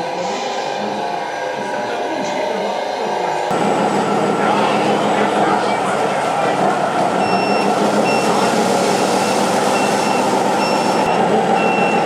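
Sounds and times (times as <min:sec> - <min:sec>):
short high reversing beeps: 0:07.2 - 0:12.0.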